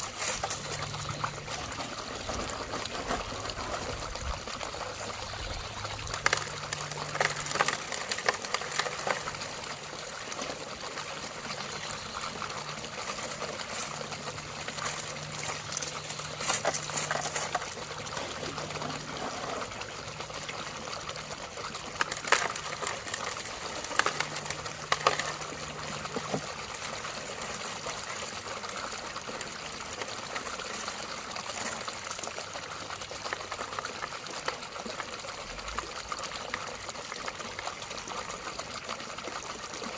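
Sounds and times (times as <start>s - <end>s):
water trickling and splashing: 0.0s - 39.9s
stones knocking together: 6.0s - 9.5s, 21.9s - 26.5s.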